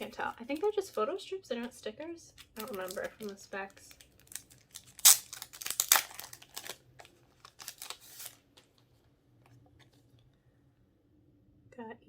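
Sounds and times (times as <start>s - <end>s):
packaging crinkling and rustling: 0.0s - 1.1s, 2.4s - 9.1s.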